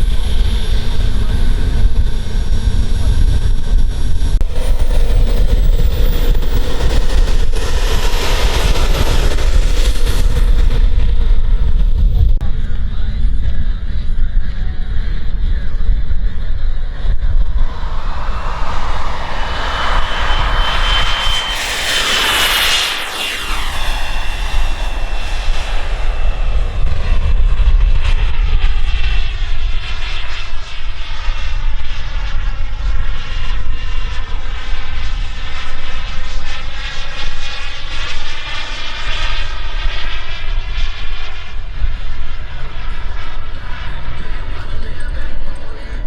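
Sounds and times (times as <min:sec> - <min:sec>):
model jet turbine whining: 0:00.0 - 0:12.2, 0:15.0 - 0:33.6.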